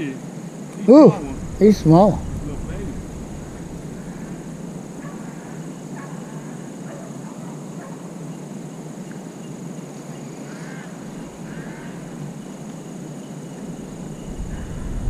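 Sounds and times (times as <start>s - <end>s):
outdoor background hiss: 0.0s - 15.0s
distant animal calls: 1.1s - 8.2s, 10.2s - 15.0s.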